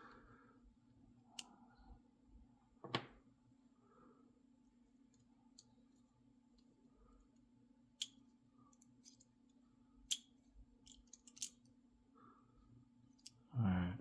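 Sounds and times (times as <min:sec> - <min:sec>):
faint steady hum: 0:00.0 - 0:14.0
metal lock parts clicking: 0:10.1 - 0:11.6.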